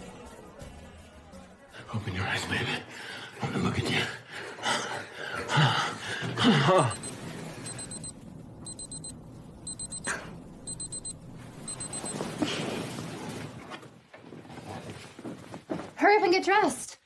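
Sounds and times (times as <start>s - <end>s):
alarm clock beeping: 6.8s - 9.1s, 9.7s - 12.2s.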